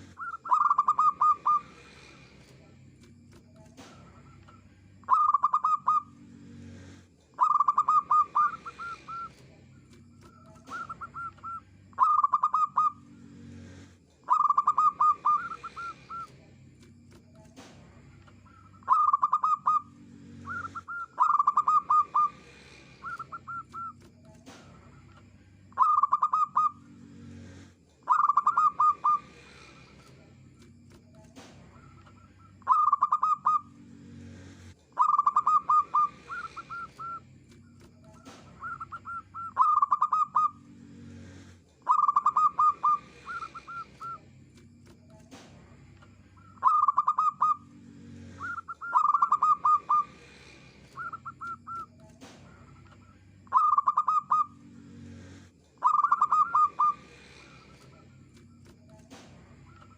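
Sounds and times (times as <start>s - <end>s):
dove cooing: 0.0s - 2.3s, 3.8s - 16.4s, 18.3s - 30.2s, 31.2s - 45.5s, 46.3s - 59.9s.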